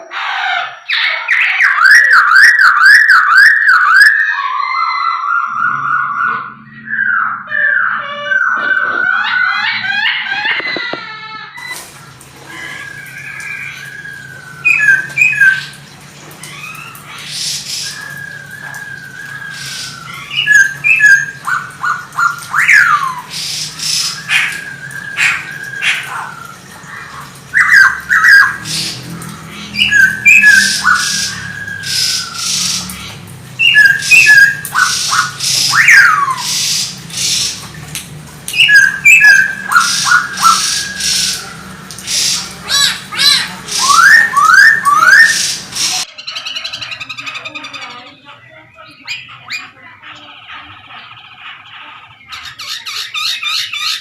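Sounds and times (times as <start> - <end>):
bird harsh raspy calls: 0.0 - 11.0, 12.0 - 37.8, 38.5 - 54.0
bird whistled song: 12.6 - 15.7, 16.5 - 26.3, 29.8 - 32.9, 33.6 - 37.6, 38.5 - 47.8.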